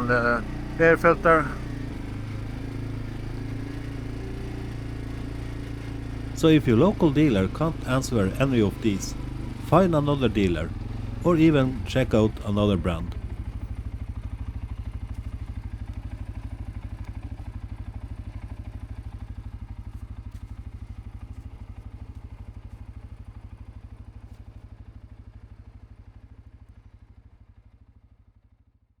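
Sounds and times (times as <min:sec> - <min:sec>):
atv engine idling: 0:00.0 - 0:21.9.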